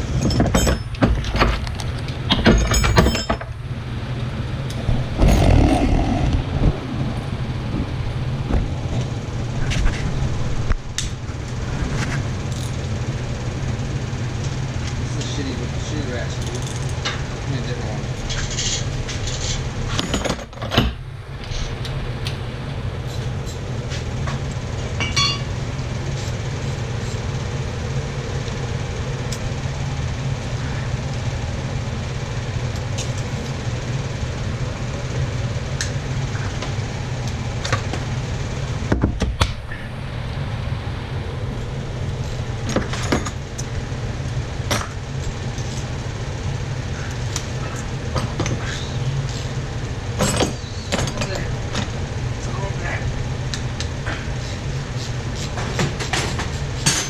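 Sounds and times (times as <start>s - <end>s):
low hum: 2.7s - 14.8s.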